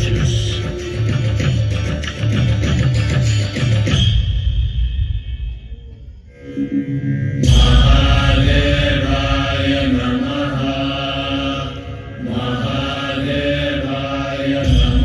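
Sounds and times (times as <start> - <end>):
voices chanting over music: 0.0 - 2.8, 7.4 - 15.0
deep low swell: 5.6 - 15.0.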